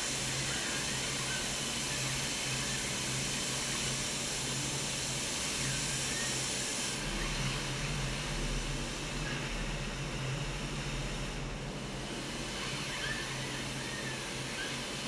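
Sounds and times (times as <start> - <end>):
industrial machine hiss: 0.0 - 15.0
low machine hum: 0.0 - 15.0
deep machine rumble: 7.0 - 13.8.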